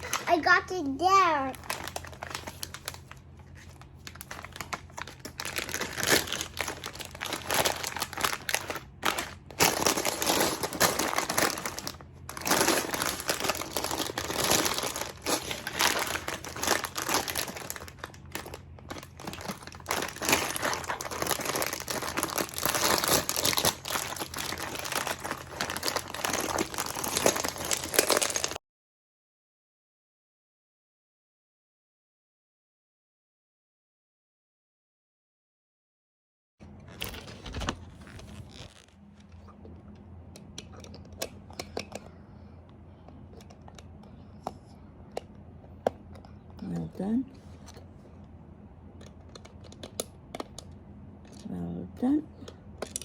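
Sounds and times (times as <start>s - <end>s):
faint low hum: 0.0s - 28.6s, 36.6s - 53.0s
plastic packaging crinkling: 0.0s - 28.6s, 36.8s - 39.3s, 52.8s - 53.0s.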